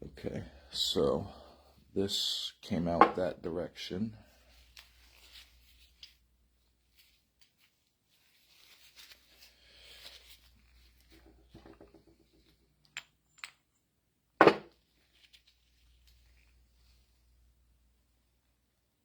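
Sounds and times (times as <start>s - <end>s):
loud sharp knock: 14.4s - 14.7s.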